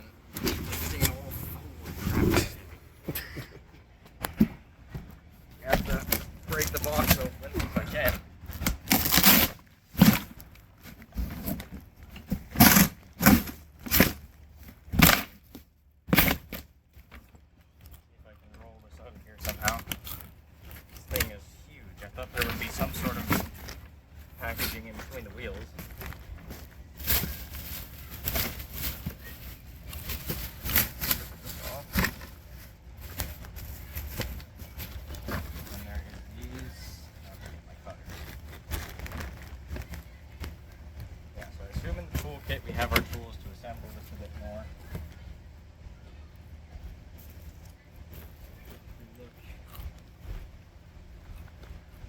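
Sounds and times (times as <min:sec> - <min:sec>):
cardboard box tearing: 0:05.8 - 0:14.3, 0:14.9 - 0:15.4.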